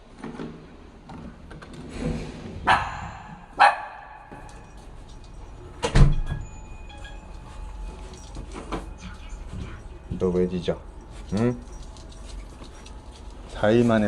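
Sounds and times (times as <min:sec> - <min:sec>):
dog barking: 0:02.6 - 0:04.4.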